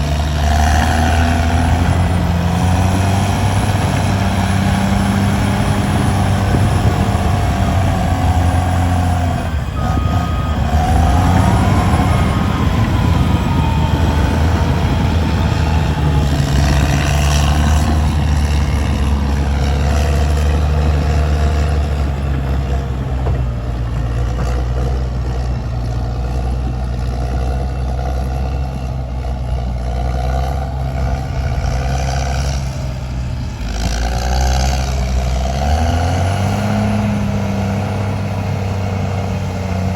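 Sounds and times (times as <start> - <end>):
heavy diesel engines droning: 0.0 - 39.9
beeps: 9.0 - 13.0.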